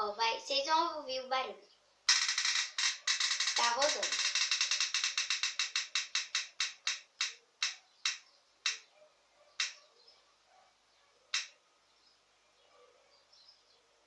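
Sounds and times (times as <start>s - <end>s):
roulette wheel clicks: 2.1s - 8.8s, 11.3s - 11.5s.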